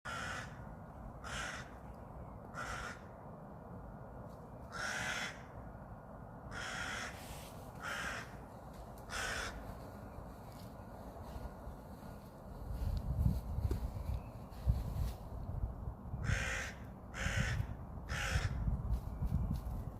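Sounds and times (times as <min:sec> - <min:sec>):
crow cawing: 0:00.1 - 0:00.6, 0:01.2 - 0:01.8, 0:02.5 - 0:03.2, 0:04.7 - 0:05.6, 0:06.5 - 0:08.5, 0:09.1 - 0:09.7, 0:16.2 - 0:18.7.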